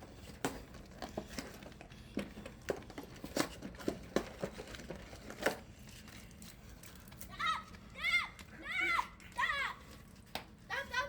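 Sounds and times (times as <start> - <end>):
clicks and knocks of eating food: 9.2 - 10.6.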